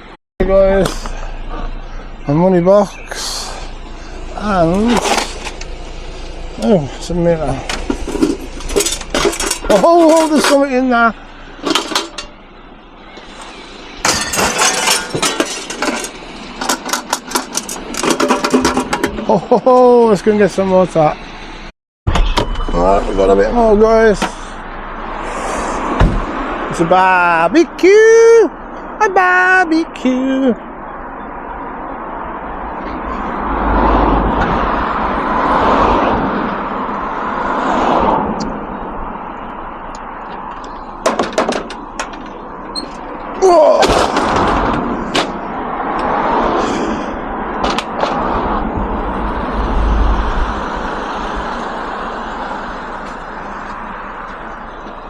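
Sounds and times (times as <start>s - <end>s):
road traffic passing: 0.0s - 55.0s
glass clattering and clinking: 14.0s - 16.1s
sharp knocks: 26.0s - 26.3s.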